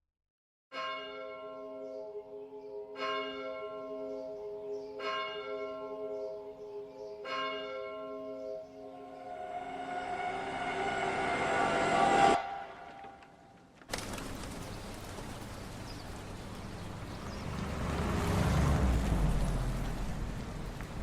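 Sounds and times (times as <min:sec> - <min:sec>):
church bell tolling: 0:00.7 - 0:02.3, 0:02.9 - 0:11.7
rushing noise: 0:08.8 - 0:15.5.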